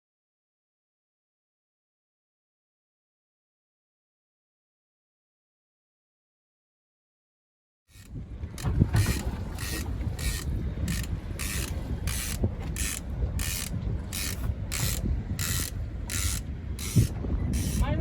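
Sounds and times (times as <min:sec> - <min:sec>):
fishing reel whirring clicks: 0:07.9 - 0:17.8
wind rumble on microphone: 0:08.0 - 0:18.0.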